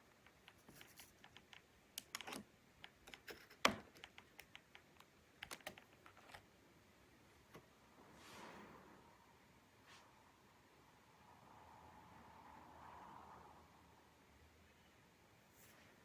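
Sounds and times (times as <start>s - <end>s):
laptop keyboard keys clicking: 0.1s - 6.4s.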